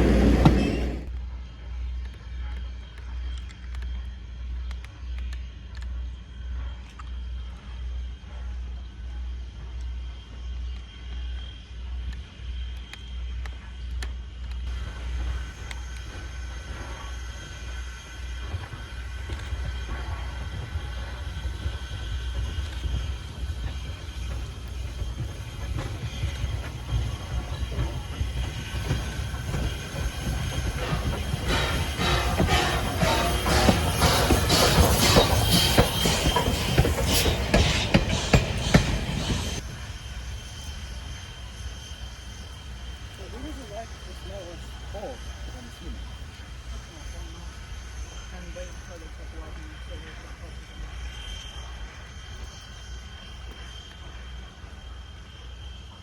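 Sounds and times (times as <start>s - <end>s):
high wheel squeal: 0.0s - 1.1s, 21.9s - 46.8s
train wheels clicking over rail joints: 0.0s - 1.1s, 12.0s - 39.6s
steam locomotive rumbling: 0.0s - 1.7s, 4.3s - 56.0s.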